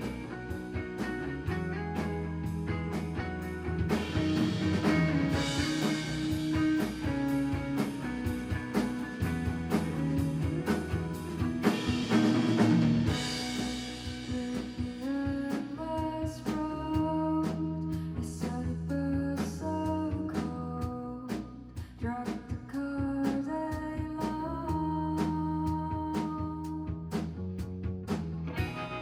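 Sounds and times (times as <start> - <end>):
drum beat: 0.0 - 15.5
electric guitar: 0.0 - 15.7, 28.4 - 29.0
bass guitar: 0.0 - 29.0.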